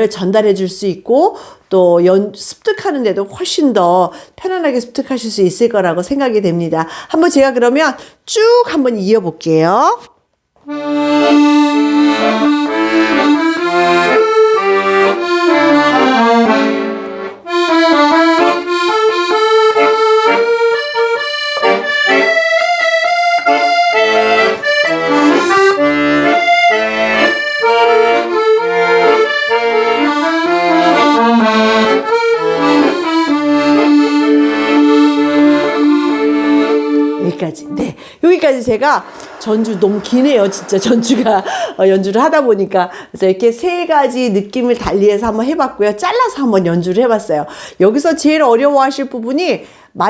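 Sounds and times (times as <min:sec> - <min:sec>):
solo accordion playing: 0:10.6 - 0:41.8.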